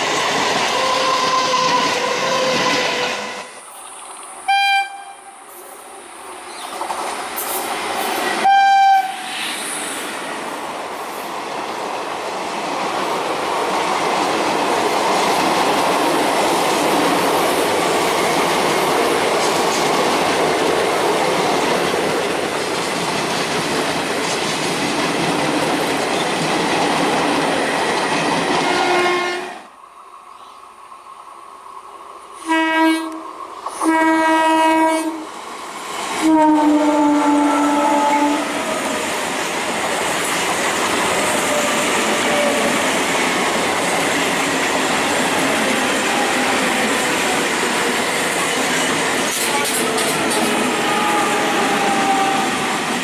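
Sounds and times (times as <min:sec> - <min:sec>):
train wheels rumbling on rails: 0:00.0 - 0:29.2, 0:33.0 - 0:53.0
train horn blasts: 0:00.7 - 0:03.5, 0:04.4 - 0:05.5, 0:08.4 - 0:09.4, 0:28.6 - 0:29.7, 0:32.4 - 0:35.3, 0:36.2 - 0:38.6.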